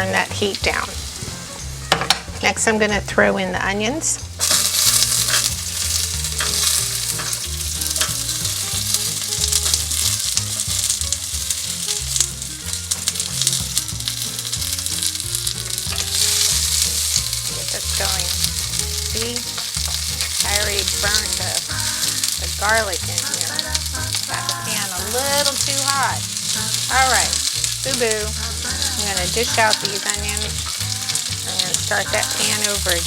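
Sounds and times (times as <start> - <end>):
onions sizzling in oil: 0.0 - 2.7, 3.9 - 33.0
low bass notes: 0.0 - 33.0
spoon stirring in pan: 4.3 - 33.0.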